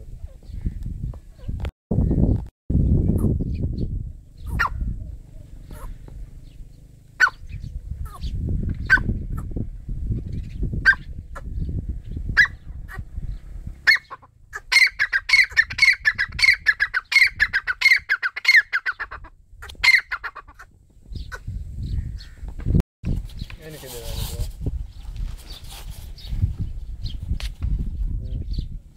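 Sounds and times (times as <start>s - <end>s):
low rumble: 2.0s - 14.5s
francolin calling: 4.4s - 9.5s, 13.9s - 22.4s.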